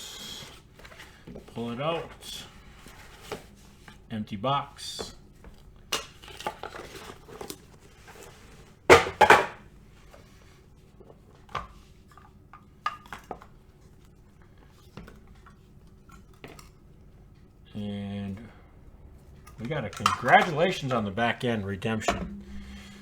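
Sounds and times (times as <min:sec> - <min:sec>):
cardboard packaging rustling: 0:06.2 - 0:08.7.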